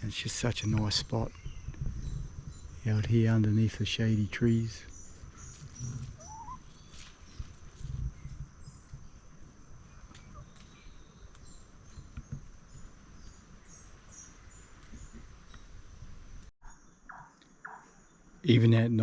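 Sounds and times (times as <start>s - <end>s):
rising bird call: 5.5s - 7.0s.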